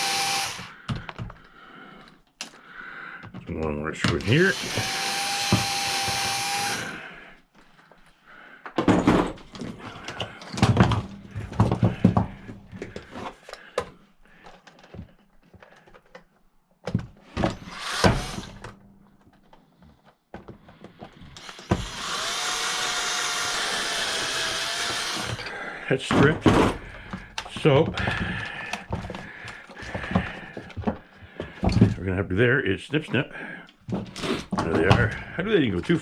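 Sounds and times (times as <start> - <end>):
power drill driving screw: 0.0 - 0.8, 4.1 - 7.0, 17.5 - 18.8, 21.4 - 25.5, 34.1 - 34.5
plastic parts and tools handled: 8.6 - 22.4.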